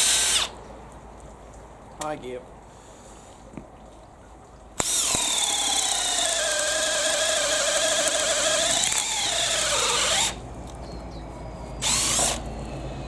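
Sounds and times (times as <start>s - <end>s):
hammer drill whining into wood: 0.0s - 0.5s, 4.8s - 10.4s, 11.8s - 12.6s.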